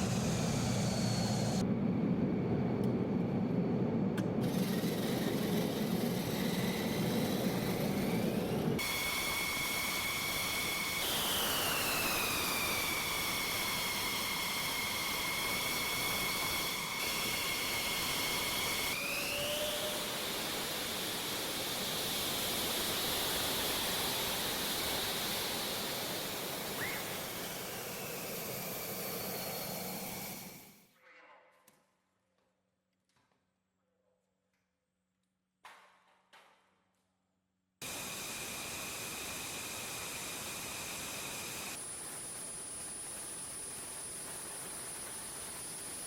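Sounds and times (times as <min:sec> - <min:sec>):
jet engine turbine whine: 0:00.0 - 0:30.8, 0:37.8 - 0:46.0
jet exhaust rush: 0:00.0 - 0:30.8.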